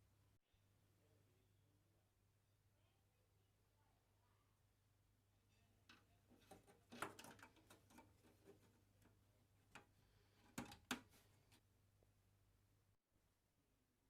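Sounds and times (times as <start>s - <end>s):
clicks of handling computer parts: 5.9s - 11.2s.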